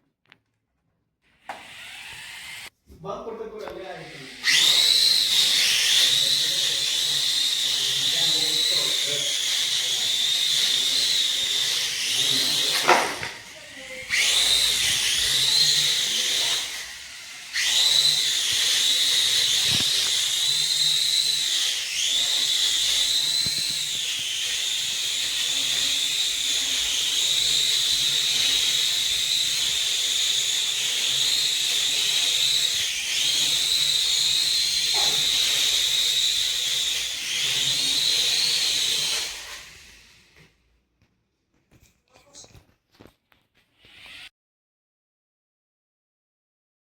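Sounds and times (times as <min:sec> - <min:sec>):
drone propellers whining: 0:04.0 - 0:39.9, 0:43.7 - 0:44.3.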